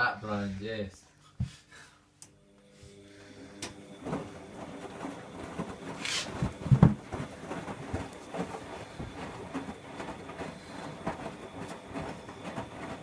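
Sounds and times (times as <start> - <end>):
washing machine drum tumbling: 3.8 - 13.0.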